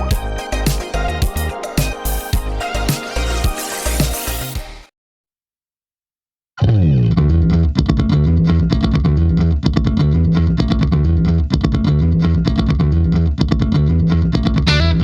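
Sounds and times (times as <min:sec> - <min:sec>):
rock music with electric guitar: 0:00.0 - 0:04.8, 0:07.9 - 0:15.0.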